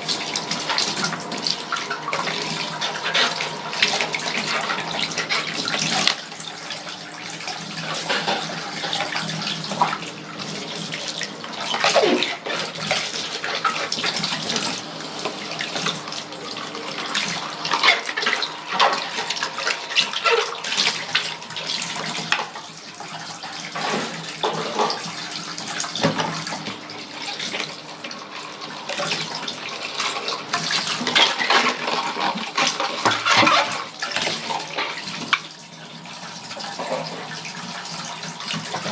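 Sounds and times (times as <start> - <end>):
tap running with splashing water: 0.0 - 38.9.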